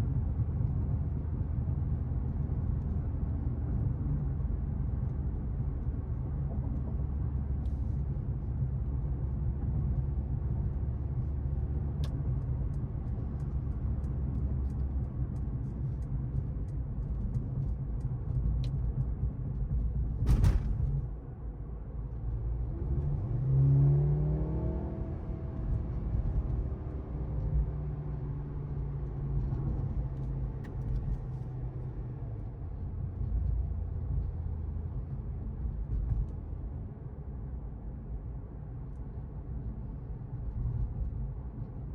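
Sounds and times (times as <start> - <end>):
road noise: 0.0 - 41.9
sharp thump: 20.2 - 21.0.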